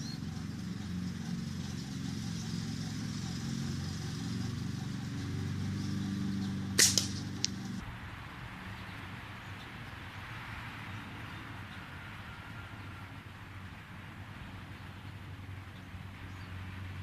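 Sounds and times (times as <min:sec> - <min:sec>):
engine hum: 0:00.0 - 0:17.0
gunshot crack: 0:06.8 - 0:07.4.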